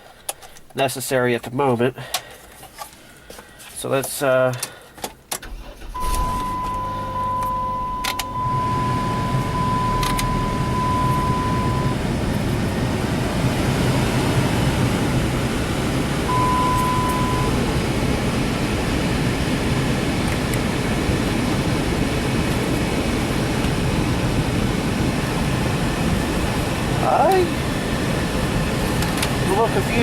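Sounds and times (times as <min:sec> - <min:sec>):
electronic warning tone: 0:05.9 - 0:12.2, 0:16.3 - 0:17.7
heater blower fan: 0:05.9 - 0:30.0.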